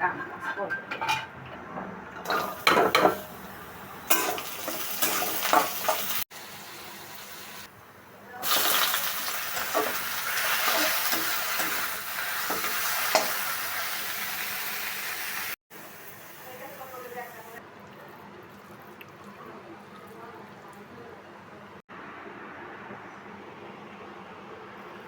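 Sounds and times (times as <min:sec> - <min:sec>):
food sizzling in hot oil: 0:02.3 - 0:07.7, 0:08.4 - 0:17.6.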